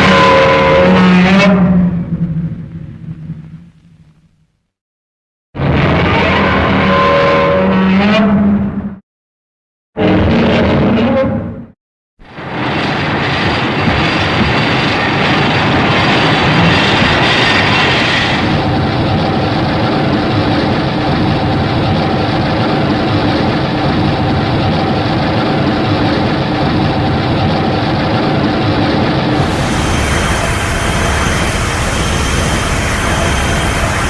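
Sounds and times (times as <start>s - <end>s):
monster rushing roar with rumble: 29.4s - 34.0s.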